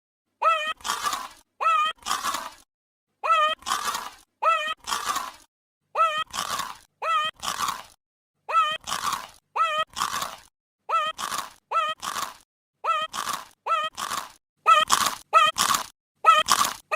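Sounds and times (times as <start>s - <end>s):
cereal crunch: 2.0s - 2.6s, 4.9s - 5.4s, 6.3s - 8.0s, 8.8s - 10.5s, 11.2s - 12.4s, 13.1s - 16.9s.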